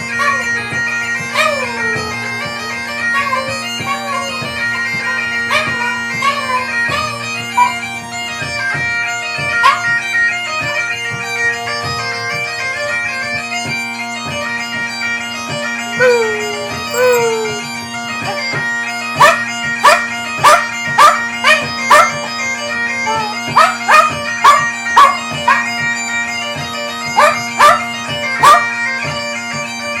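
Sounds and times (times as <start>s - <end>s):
bagpipes playing over drones: 0.0s - 30.0s
dog yelping: 1.3s - 2.1s, 5.1s - 7.8s, 9.5s - 9.9s, 15.9s - 18.4s, 19.2s - 22.1s, 23.1s - 25.7s, 27.2s - 28.7s
dog howling: 1.3s - 2.2s, 5.1s - 7.8s, 15.9s - 18.4s, 27.2s - 27.8s.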